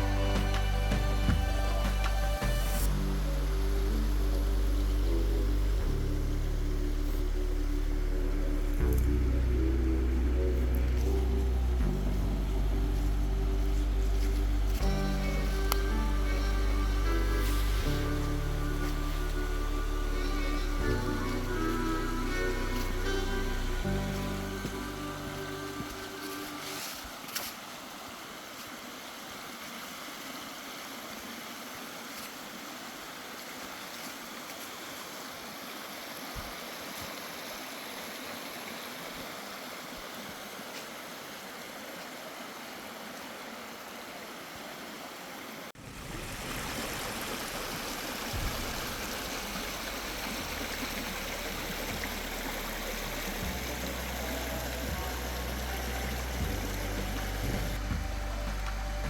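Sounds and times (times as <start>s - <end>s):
music with deep bass notes: 0.0s - 26.4s, 48.3s - 59.0s
river water rushing: 0.0s - 59.0s.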